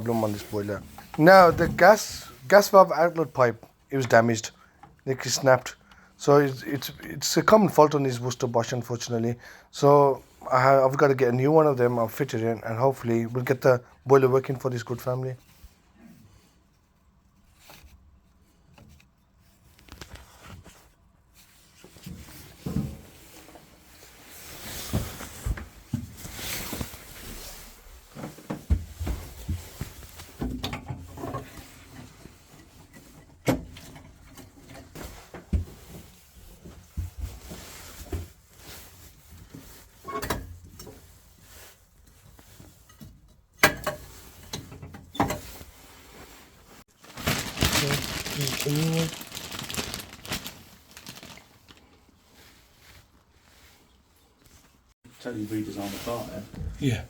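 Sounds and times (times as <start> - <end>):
rustling: 15.4 - 33.3, 45.4 - 57.0.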